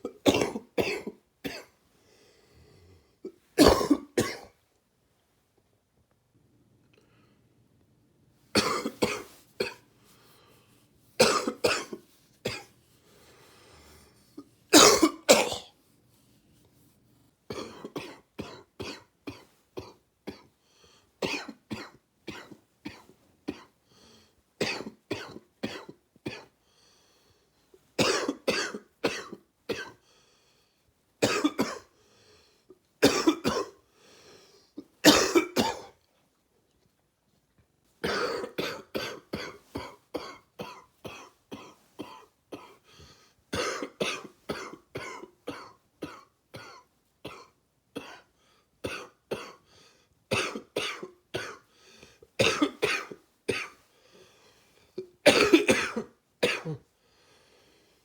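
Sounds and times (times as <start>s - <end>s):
faint breaths: 1.9s - 3.2s, 9.8s - 11.0s, 12.8s - 14.7s, 23.8s - 24.5s, 26.6s - 27.7s, 30.0s - 31.0s, 31.9s - 32.8s, 33.9s - 34.8s, 42.8s - 43.4s, 51.6s - 52.4s, 53.8s - 55.1s, 56.9s - 58.0s
man coughing: 3.6s - 4.5s, 11.2s - 12.6s, 14.8s - 15.7s, 28.0s - 29.9s, 33.0s - 33.7s, 35.0s - 35.9s, 43.6s - 47.4s, 52.4s - 53.7s, 55.2s - 56.9s.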